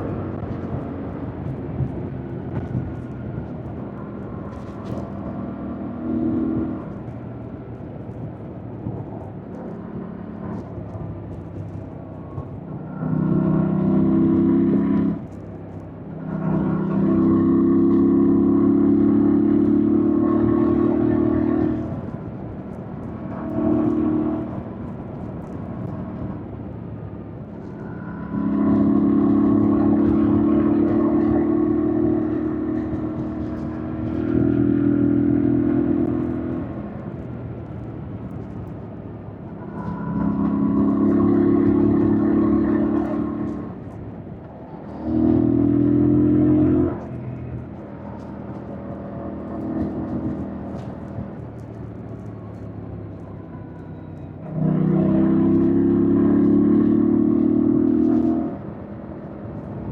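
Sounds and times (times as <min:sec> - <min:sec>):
motorcycle engine revving: 0:39.6 - 0:43.8, 0:54.4 - 0:59.9.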